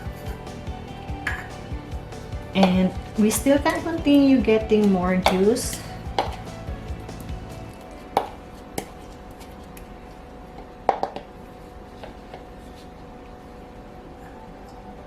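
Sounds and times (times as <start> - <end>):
pestle knocking in a mortar: 6.1 - 6.4.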